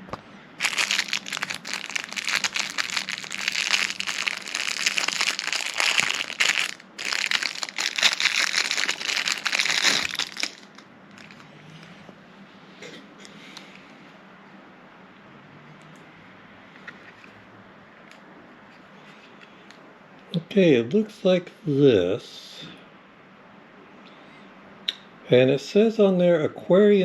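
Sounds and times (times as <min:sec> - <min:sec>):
plastic packaging crinkling: 0:00.6 - 0:11.4.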